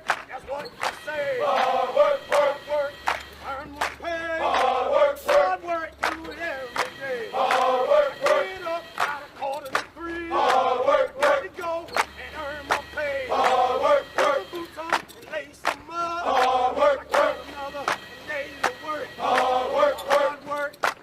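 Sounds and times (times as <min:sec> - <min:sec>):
chorus of voices singing: 0:00.9 - 0:21.0.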